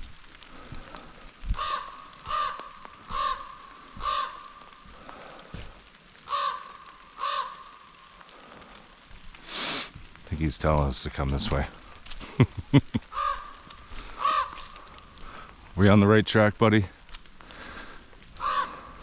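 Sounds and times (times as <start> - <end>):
light rain: 0.0 - 19.0
raven calling: 0.4 - 9.6, 13.0 - 15.6, 17.4 - 19.0.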